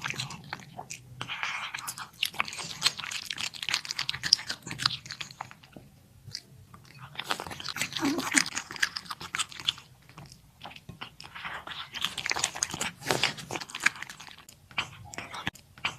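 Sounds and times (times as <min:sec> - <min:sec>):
cat crunching dry food: 0:00.0 - 0:05.7, 0:06.3 - 0:15.5.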